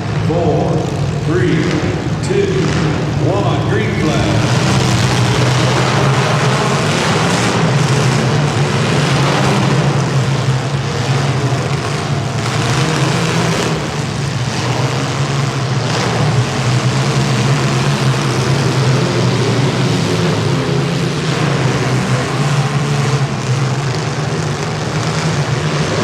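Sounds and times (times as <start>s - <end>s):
car engines droning: 0.0s - 26.0s.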